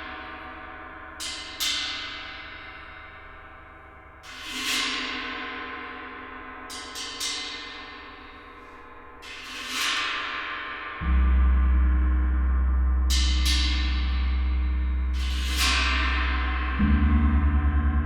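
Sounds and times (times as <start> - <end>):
deep low hum: 11.0 - 18.0.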